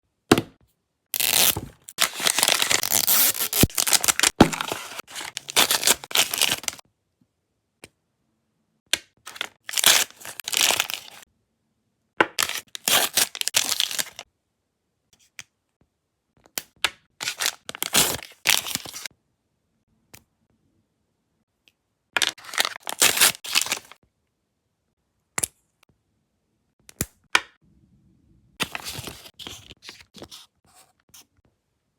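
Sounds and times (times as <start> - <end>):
plastic packaging tearing and crinkling: 1.2 - 6.8, 9.3 - 11.2, 12.4 - 14.2, 17.2 - 19.1, 22.2 - 24.0.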